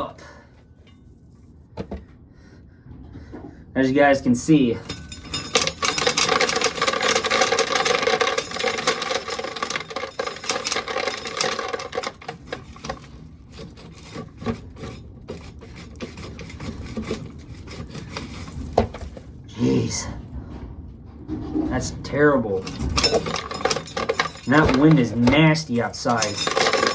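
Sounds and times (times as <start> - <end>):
corn sheller rasping scrape: 4.8 - 19.3, 22.6 - 26.9
rattles and clicks: 4.8 - 19.3, 20.5 - 26.9.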